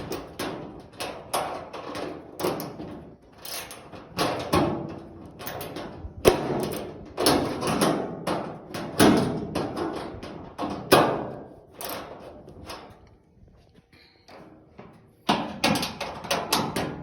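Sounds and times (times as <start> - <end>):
metal knocks and clunks: 14.3 - 17.0.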